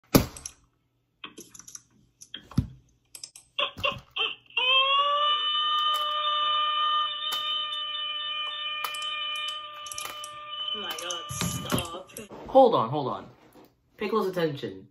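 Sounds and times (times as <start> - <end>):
high-pitched alarm tone: 6.6 - 12.3.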